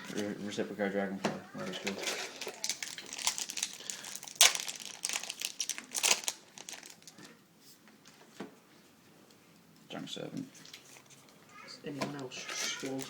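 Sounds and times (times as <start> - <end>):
foil wrapper crinkling: 1.7 - 7.4, 12.5 - 13.0.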